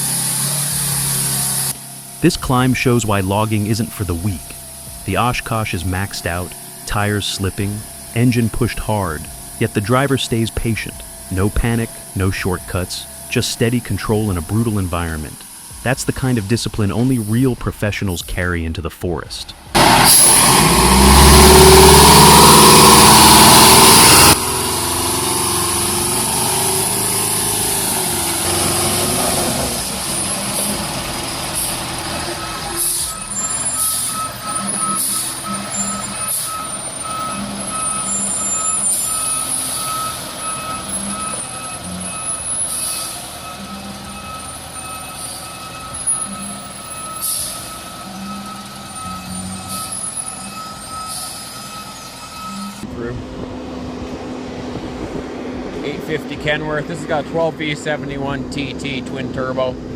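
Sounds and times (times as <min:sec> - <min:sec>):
truck engine running: 0:00.0 - 0:59.9
backup beeper: 0:02.2 - 0:19.2, 0:31.4 - 0:53.2
air brake hissing: 0:26.9 - 0:52.8.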